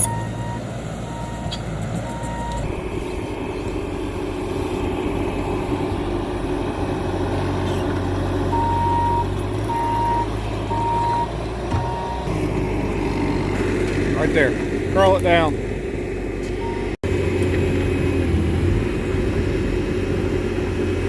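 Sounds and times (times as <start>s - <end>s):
backup alarm beeping: 0.0s - 2.7s, 8.5s - 12.3s, 16.6s - 17.0s
track loader diesel engine: 0.0s - 21.0s.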